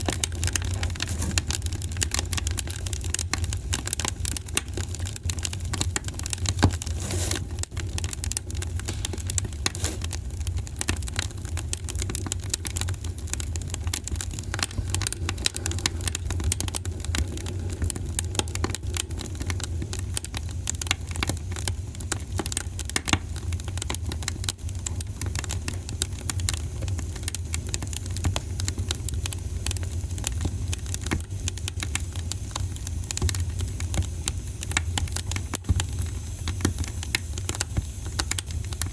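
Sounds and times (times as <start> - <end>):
low fire rumble: 0.0 - 38.9
wood fire crackling: 0.0 - 38.9.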